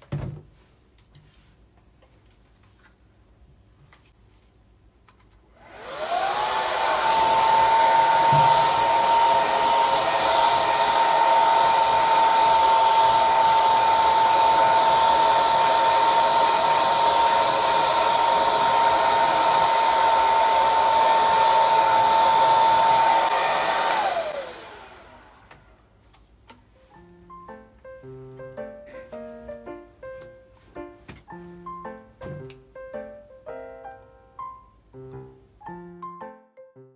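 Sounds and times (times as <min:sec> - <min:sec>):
hair dryer motor whine: 0:05.6 - 0:25.8.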